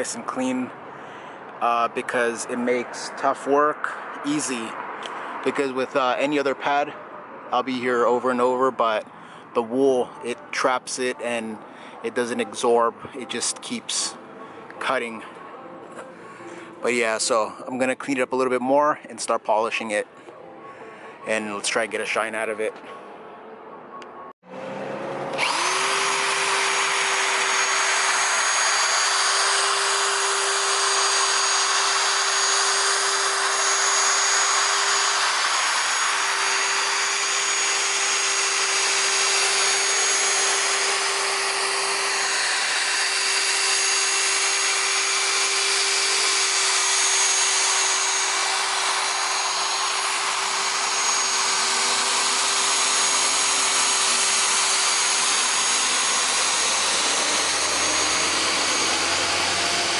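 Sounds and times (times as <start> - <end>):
electric polisher motor whine: 24.5 - 59.9.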